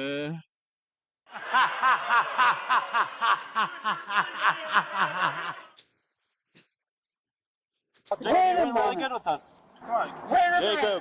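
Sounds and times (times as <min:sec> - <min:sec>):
man laughing hard: 0:01.4 - 0:05.7.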